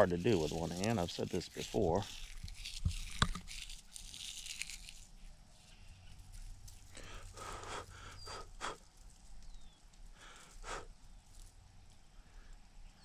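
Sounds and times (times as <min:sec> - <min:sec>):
puffs of breath blowing: 0:06.9 - 0:08.8, 0:10.1 - 0:10.9.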